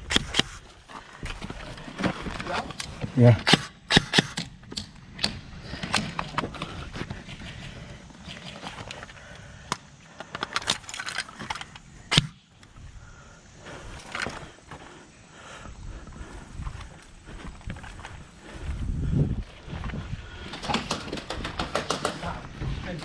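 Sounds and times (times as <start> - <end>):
sharp clicks and knocks: 20.5 - 22.4.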